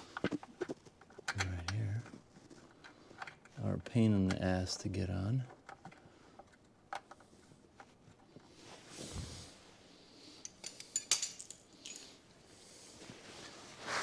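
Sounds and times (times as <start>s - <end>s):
small metal screws clinking: 10.4s - 12.2s.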